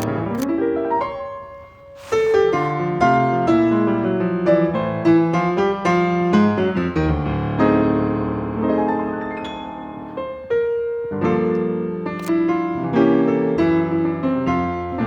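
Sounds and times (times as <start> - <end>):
jazz piano music: 0.0 - 15.0.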